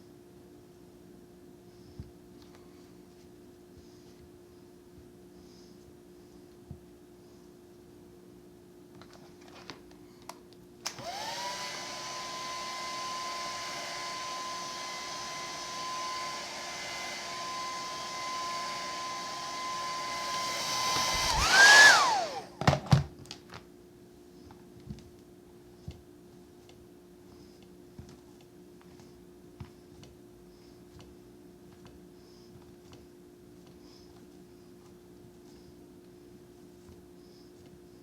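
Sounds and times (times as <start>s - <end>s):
blow dryer motor whining: 10.8s - 22.6s.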